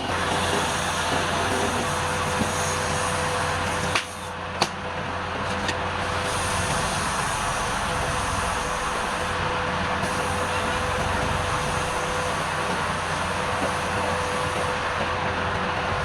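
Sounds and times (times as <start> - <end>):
wood lathe humming: 5.3 - 15.3.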